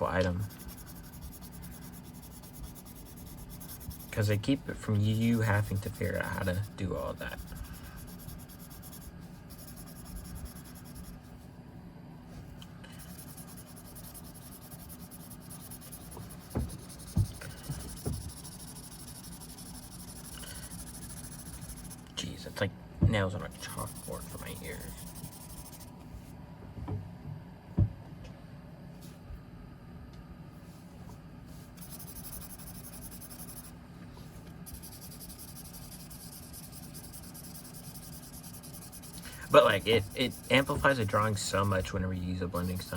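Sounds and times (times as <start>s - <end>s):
blending stump scratching paper: 0.0s - 11.2s, 12.9s - 22.4s, 23.5s - 25.9s, 31.8s - 33.7s, 34.6s - 42.9s.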